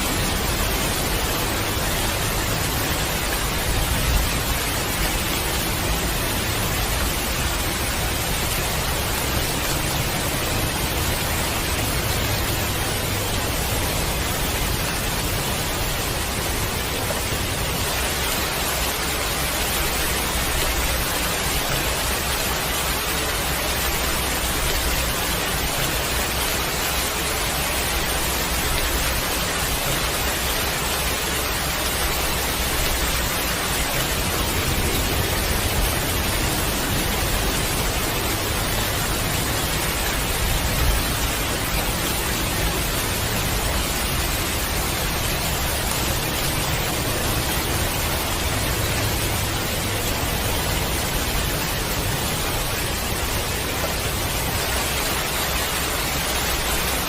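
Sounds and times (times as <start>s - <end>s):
heavy rain falling: 0.0s - 57.0s.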